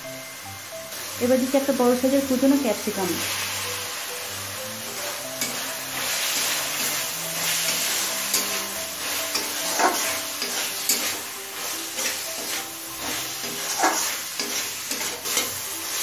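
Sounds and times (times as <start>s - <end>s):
soft background music: 0.0s - 16.0s
vegetables sizzling in a pan: 0.0s - 16.0s
spoon scraping a pan: 4.8s - 16.0s.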